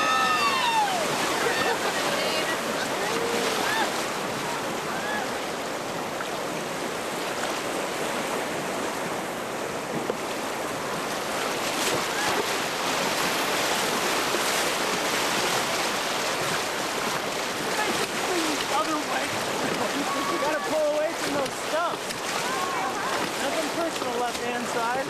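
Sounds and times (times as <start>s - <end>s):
river rapids rushing: 0.0s - 25.0s.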